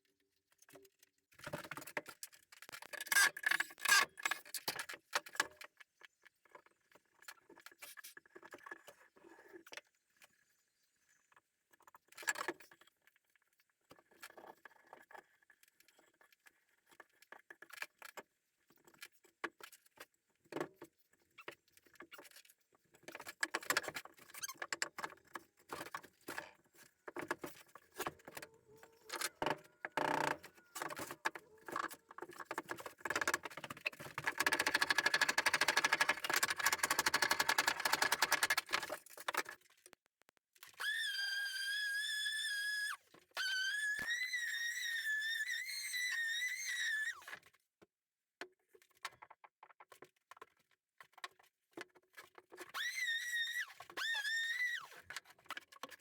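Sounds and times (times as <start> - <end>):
hand tools clicking on wood: 27.1 - 39.6.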